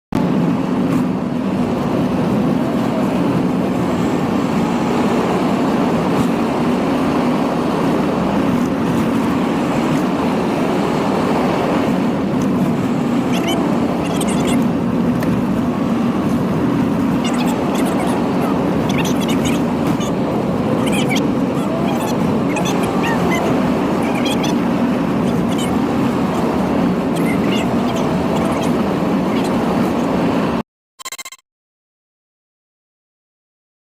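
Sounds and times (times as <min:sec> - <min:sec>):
high-pitched squeaks: 0:13.3 - 0:14.6, 0:17.2 - 0:24.6, 0:25.2 - 0:29.6.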